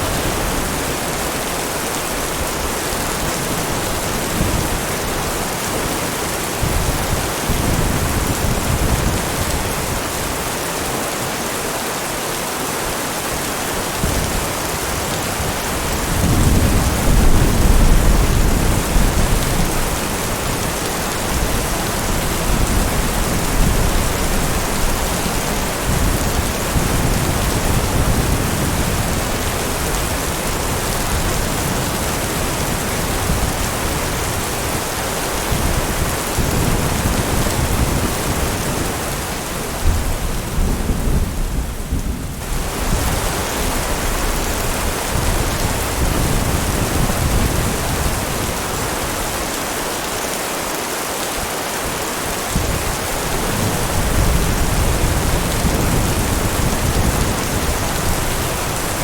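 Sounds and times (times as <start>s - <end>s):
heavy rain: 0.0s - 59.0s
thunder rumbling: 13.9s - 48.9s, 52.5s - 59.0s.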